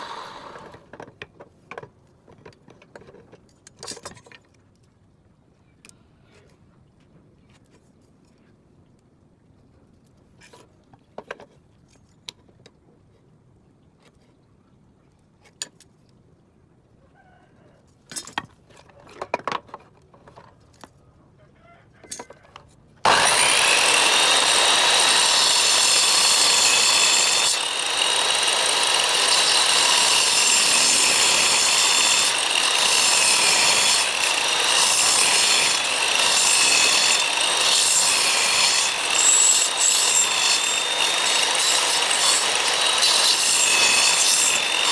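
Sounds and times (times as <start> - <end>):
power tool cutting wood: 0.0 - 0.9, 23.1 - 44.9.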